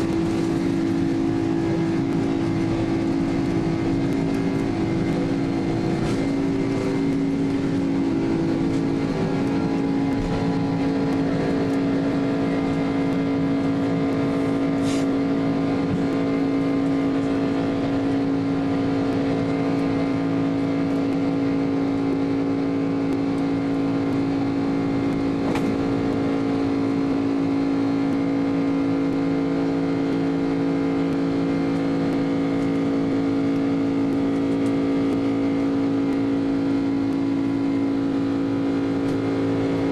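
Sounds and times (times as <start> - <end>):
aircraft cabin hum: 0.0 - 28.2, 37.0 - 39.9.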